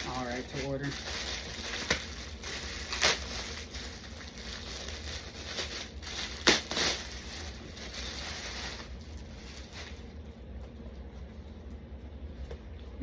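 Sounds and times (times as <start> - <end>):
plastic packaging crinkling: 0.0 - 10.3.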